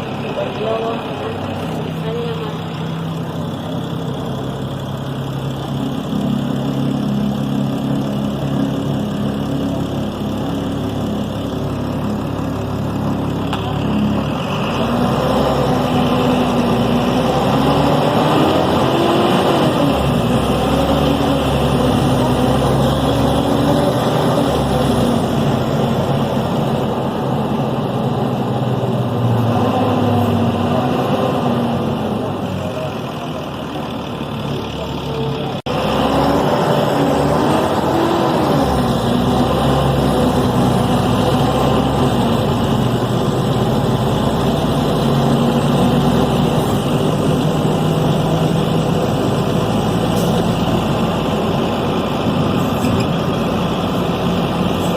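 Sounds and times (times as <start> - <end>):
bus diesel engine running: 0.0 - 54.9.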